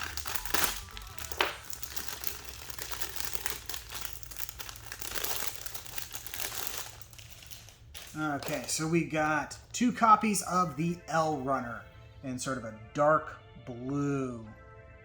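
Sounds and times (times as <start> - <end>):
plastic bag crinkling: 0.0 - 9.8.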